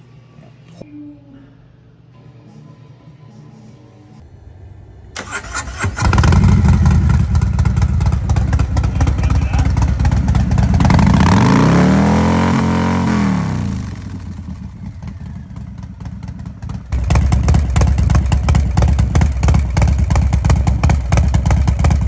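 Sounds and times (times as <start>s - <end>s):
motorcycle engine revving: 4.2s - 22.0s
motorcycle engine pulsing idle: 4.7s - 22.0s.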